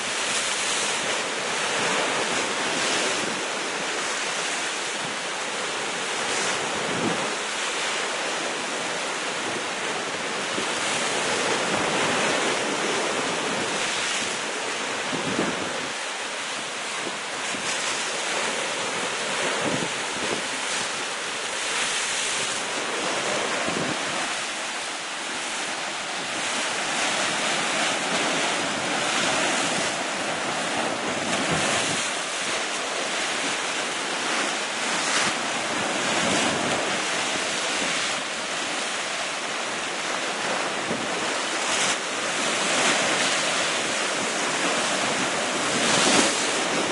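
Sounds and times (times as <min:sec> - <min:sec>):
waves breaking against rocks: 0:05.8 - 0:46.9
wind buffeting microphone: 0:19.4 - 0:21.0, 0:23.0 - 0:24.4, 0:26.1 - 0:32.2.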